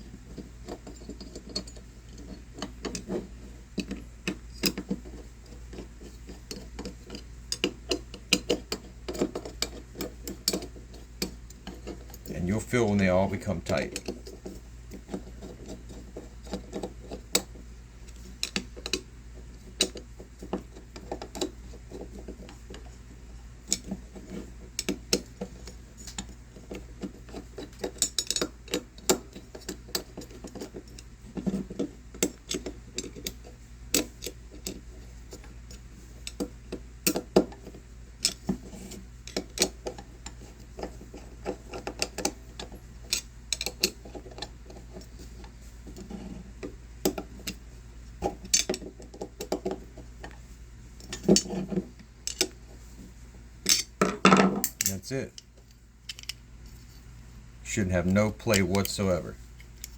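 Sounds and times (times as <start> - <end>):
steady low hum: 0.0 - 59.9
metallic clicks of screws tightened: 56.1 - 56.4.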